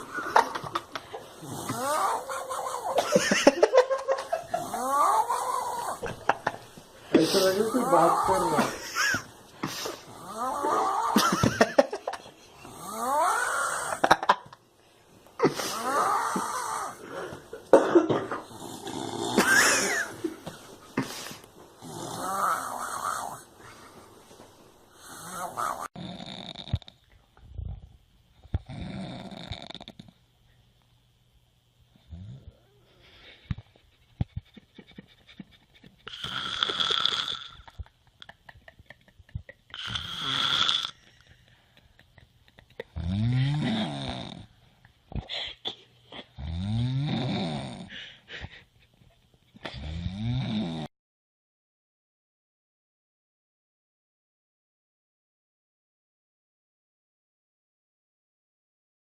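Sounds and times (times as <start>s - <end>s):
loud snoring: 1.4s - 3.0s, 4.5s - 6.1s, 7.3s - 8.8s, 10.0s - 11.4s, 12.6s - 14.0s, 15.7s - 17.0s, 18.4s - 20.2s, 21.8s - 23.5s, 25.0s - 27.0s, 28.6s - 30.2s, 32.0s - 32.6s, 36.1s - 37.8s, 39.7s - 41.0s, 42.9s - 44.5s, 46.4s - 47.9s, 49.7s - 50.9s.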